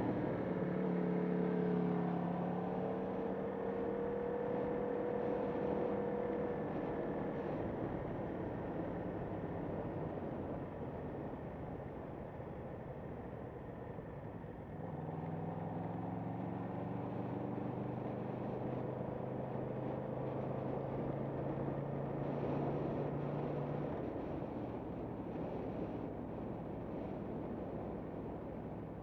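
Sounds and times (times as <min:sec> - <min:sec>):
wind noise: 0:19.8 - 0:29.0.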